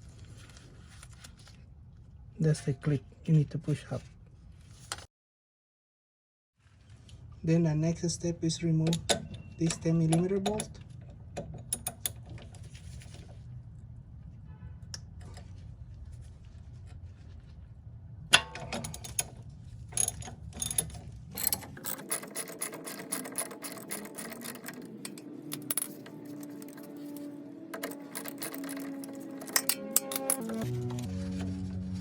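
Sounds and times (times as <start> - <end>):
low steady hum: 15.2 - 32.0
background music: 22.3 - 32.0.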